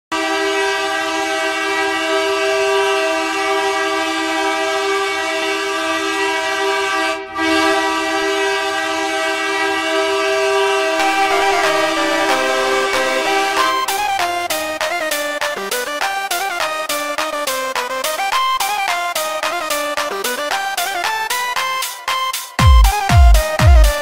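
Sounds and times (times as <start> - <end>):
goal horn blasting: 11.0 - 15.0.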